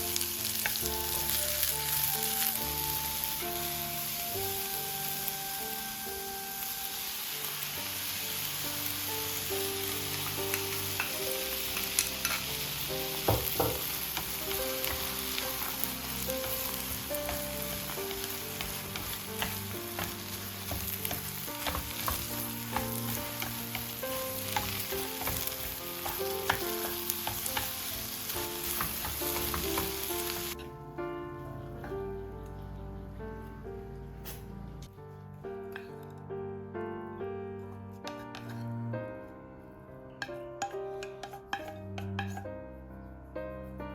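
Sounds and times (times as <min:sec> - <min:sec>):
sizzling hiss with crackles: 0:00.0 - 0:30.6
background music: 0:00.0 - 0:43.9.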